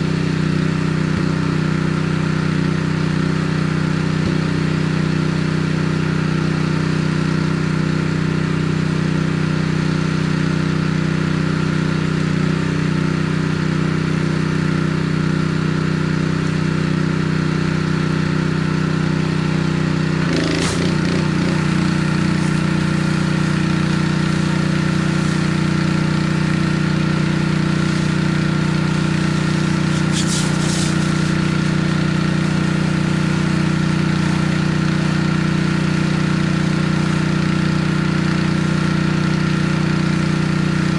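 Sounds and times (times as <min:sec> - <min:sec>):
pressure washer engine running: 0:00.0 - 0:40.9
hissing bursts: 0:20.3 - 0:25.8, 0:29.4 - 0:31.9.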